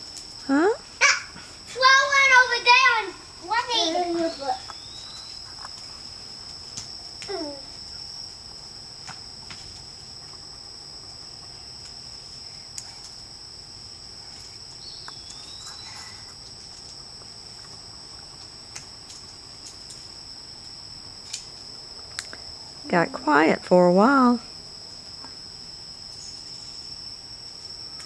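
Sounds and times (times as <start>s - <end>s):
insect chorus trilling: 0.0s - 28.0s
faint ticks: 12.7s - 13.2s.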